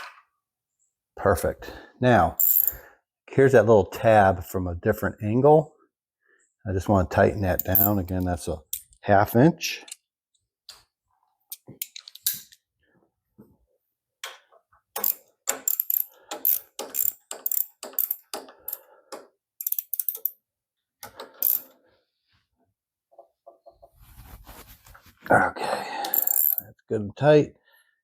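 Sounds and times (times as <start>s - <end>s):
ratchet wrench clicking: 2.4s - 2.8s, 15.0s - 18.8s, 19.6s - 20.4s, 21.1s - 21.7s, 26.1s - 26.6s.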